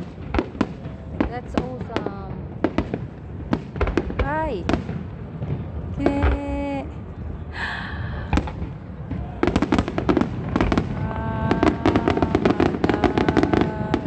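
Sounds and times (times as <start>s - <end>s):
rapid crackling firework pops: 0.0s - 6.5s, 8.3s - 14.0s
firework bang: 8.2s - 14.0s.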